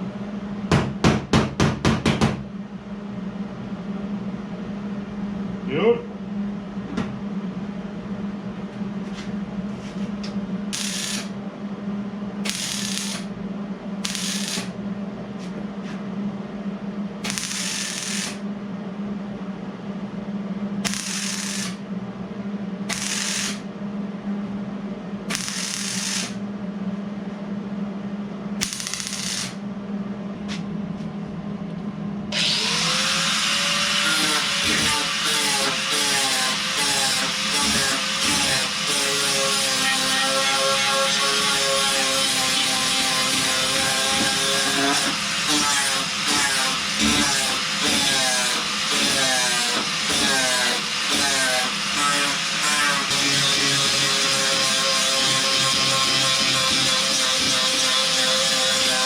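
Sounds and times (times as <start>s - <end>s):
welder hissing: 10.7s - 11.3s, 12.4s - 13.3s, 14.0s - 14.7s, 17.2s - 18.4s, 20.8s - 21.8s, 22.9s - 23.6s, 25.3s - 26.4s, 28.6s - 29.6s, 32.8s - 40.6s, 41.2s - 59.0s.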